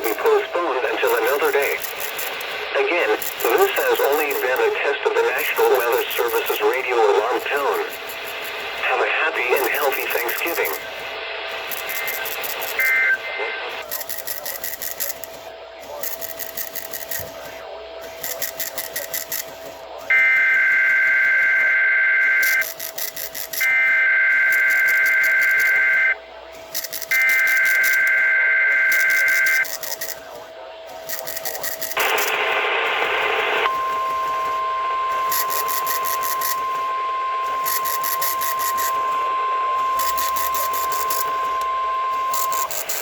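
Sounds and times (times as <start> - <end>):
digital data burst alternating tones: 0.0 - 17.3, 18.0 - 43.0
radio static hiss: 0.0 - 43.0
steady alert beep: 33.7 - 43.0.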